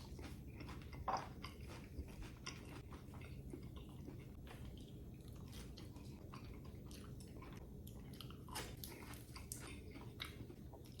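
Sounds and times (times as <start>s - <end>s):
person chewing crunchy food: 0.0s - 11.0s.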